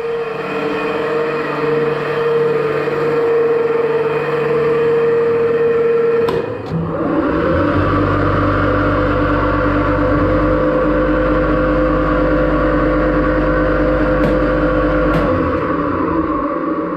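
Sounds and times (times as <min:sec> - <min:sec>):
machine humming: 0:00.0 - 0:16.9
deep rumble: 0:06.5 - 0:16.9.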